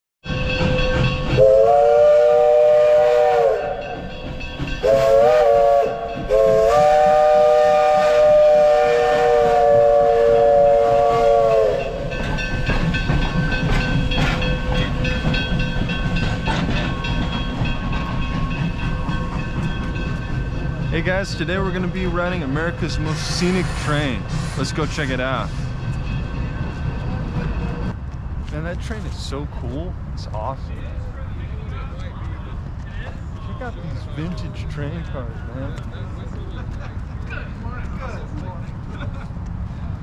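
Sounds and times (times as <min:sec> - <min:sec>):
steam locomotive chime whistle: 0:00.2 - 0:27.0
steady train noise: 0:00.2 - 0:40.0.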